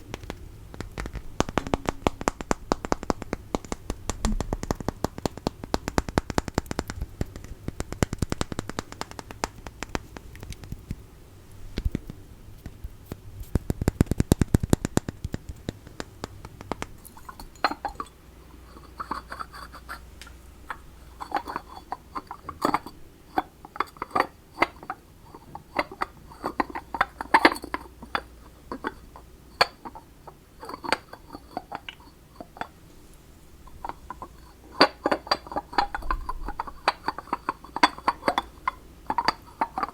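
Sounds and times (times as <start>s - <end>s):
fingernail tapping and scratching: 0.0s - 11.0s, 11.7s - 18.1s, 18.7s - 20.1s, 20.7s - 32.7s, 33.7s - 39.9s
taps and clinks on ceramic: 16.6s - 18.1s, 20.7s - 32.8s, 33.7s - 39.9s.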